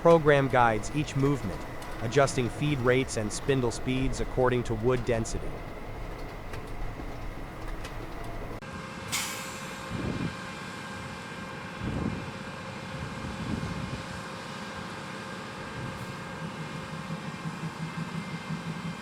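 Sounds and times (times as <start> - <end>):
woodworking machinery humming: 0.0 - 8.6.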